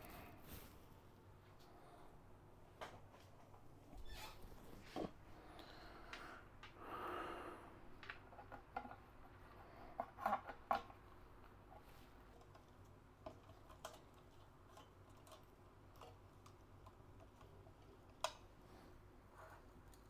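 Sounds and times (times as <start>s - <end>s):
rustle of computer parts: 11.7s - 20.0s.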